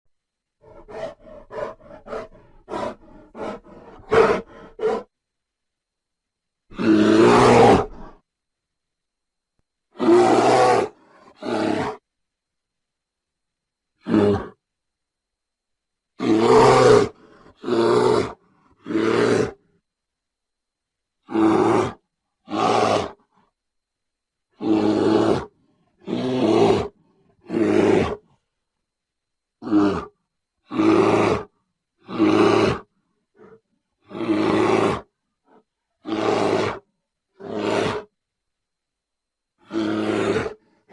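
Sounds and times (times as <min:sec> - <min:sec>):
bear grunting: 0:00.6 - 0:05.1, 0:06.7 - 0:08.2, 0:09.9 - 0:12.0, 0:14.0 - 0:14.6, 0:16.2 - 0:19.7, 0:21.2 - 0:23.3, 0:24.5 - 0:28.4, 0:29.6 - 0:36.8, 0:37.4 - 0:38.1, 0:39.6 - 0:40.9
bear roaring: 0:00.6 - 0:05.1, 0:06.7 - 0:08.2, 0:09.9 - 0:12.0, 0:14.0 - 0:14.6, 0:16.2 - 0:19.7, 0:21.2 - 0:23.3, 0:24.5 - 0:28.4, 0:29.6 - 0:38.1, 0:39.6 - 0:40.9.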